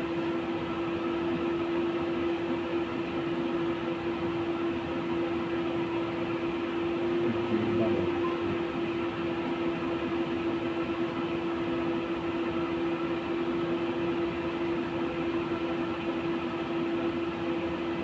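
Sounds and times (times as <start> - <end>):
constant electric hum: 0.0 - 18.0
tram rolling rumble: 7.0 - 9.1.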